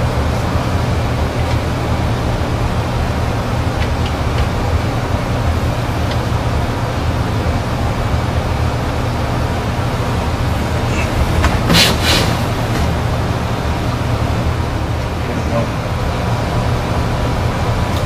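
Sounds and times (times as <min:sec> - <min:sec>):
low machine hum and rumble: 0:00.0 - 0:18.0
short bursts of hiss: 0:10.9 - 0:12.8.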